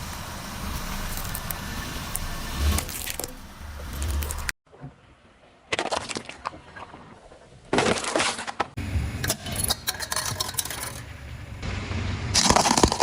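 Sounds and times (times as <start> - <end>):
objects crunching under tyre: 0.0 - 4.6, 12.4 - 13.0
low rumble: 10.9 - 12.5.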